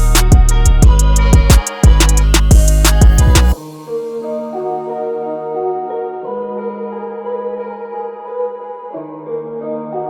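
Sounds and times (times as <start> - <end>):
ambient synth chords: 0.0 - 7.0.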